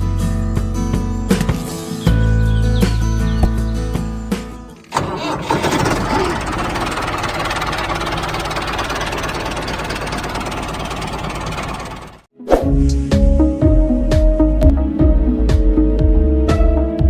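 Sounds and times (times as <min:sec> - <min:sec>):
small engine running: 0:04.9 - 0:12.3.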